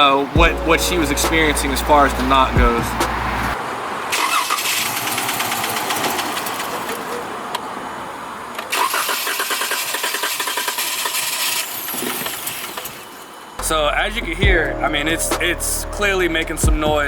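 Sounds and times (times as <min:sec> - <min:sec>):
engine cranking and stumbling: 0:00.4 - 0:07.2, 0:08.6 - 0:13.4.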